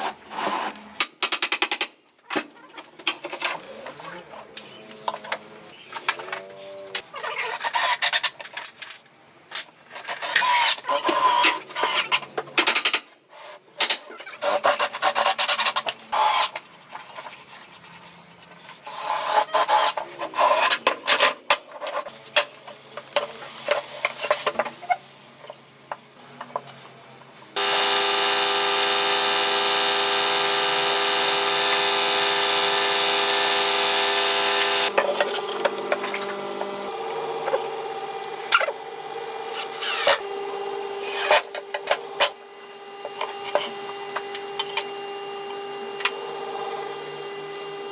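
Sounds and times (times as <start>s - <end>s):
power tool motor running: 27.6s - 42.2s.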